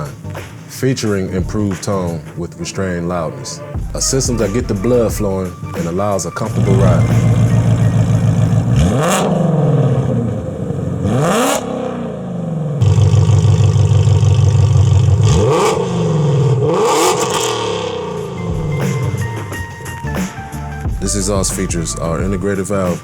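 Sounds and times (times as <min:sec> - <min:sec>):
car engine revving: 0:00.0 - 0:23.0.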